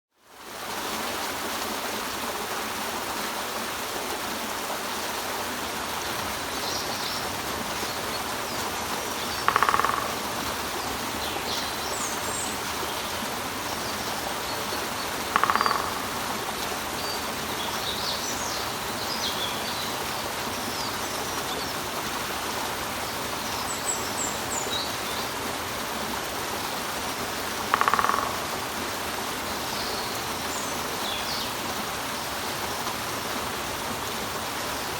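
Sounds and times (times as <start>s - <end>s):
water running over rock: 0.2s - 34.9s
small birds chirping: 6.7s - 19.9s
woodpecker bursts: 8.6s - 11.0s, 14.7s - 16.6s, 27.5s - 28.7s.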